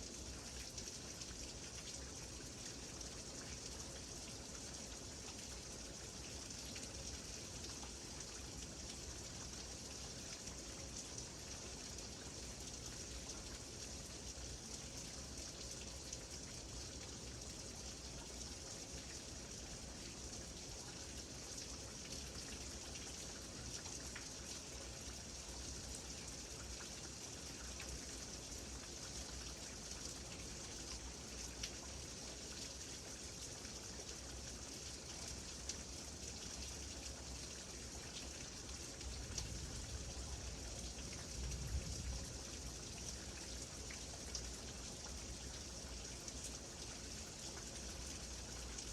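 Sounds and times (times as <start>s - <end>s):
rain falling: 0.0s - 48.9s.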